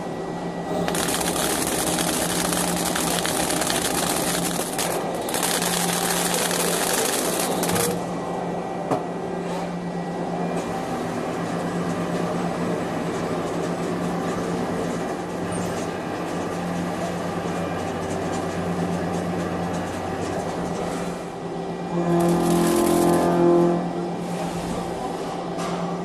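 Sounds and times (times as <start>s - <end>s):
cnc machine humming: 0.0s - 8.6s, 21.7s - 24.2s.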